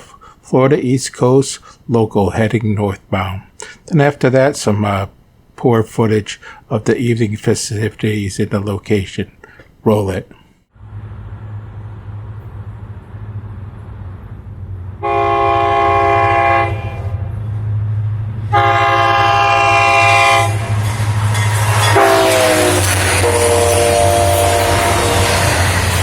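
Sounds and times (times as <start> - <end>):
locomotive engine drone: 10.7 - 26.0
train wheel and rail noise: 10.8 - 26.0
locomotive air horn blasts: 15.0 - 17.4, 18.5 - 26.0.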